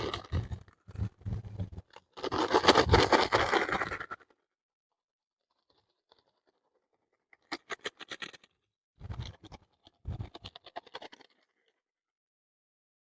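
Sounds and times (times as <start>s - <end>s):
scraping and scratching handling noise: 0.0s - 4.2s, 7.4s - 11.6s.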